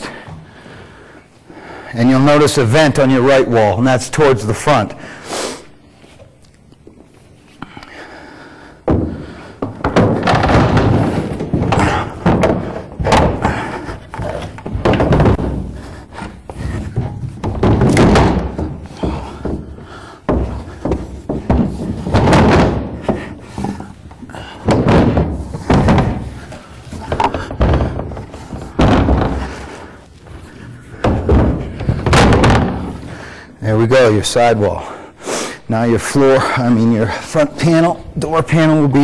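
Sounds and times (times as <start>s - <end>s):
wood thudding on wood: 8.8s - 33.3s.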